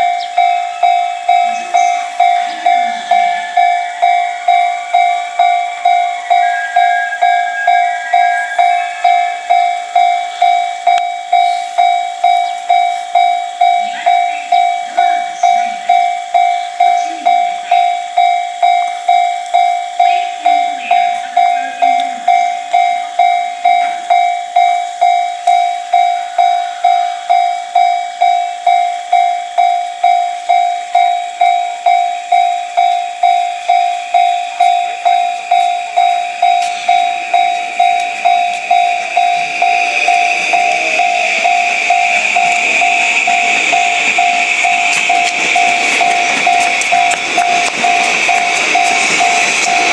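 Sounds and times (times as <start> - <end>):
level-crossing alarm bell: 0.0 - 49.9.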